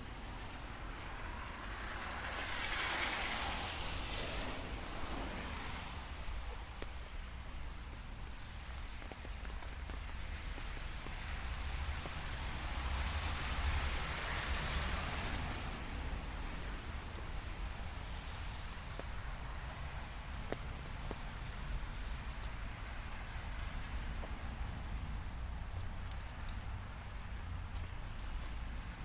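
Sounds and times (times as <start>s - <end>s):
low traffic rumble: 0.0s - 29.0s
rain hissing on street: 0.0s - 29.0s
vehicles passing on wet road: 0.0s - 29.0s.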